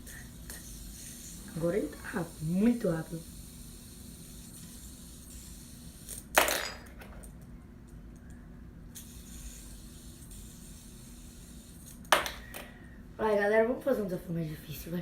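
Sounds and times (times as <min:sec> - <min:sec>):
fidget spinner whirring: 0:00.0 - 0:06.4, 0:09.0 - 0:12.6.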